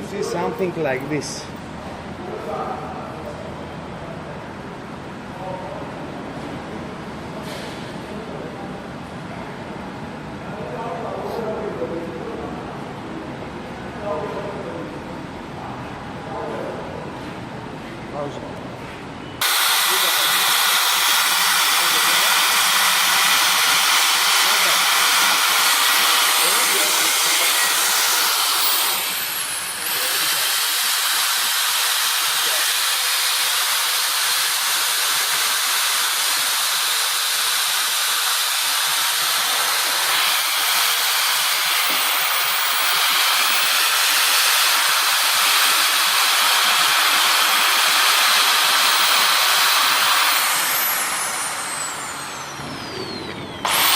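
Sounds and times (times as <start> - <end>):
air gun hissing: 19.4 - 53.9.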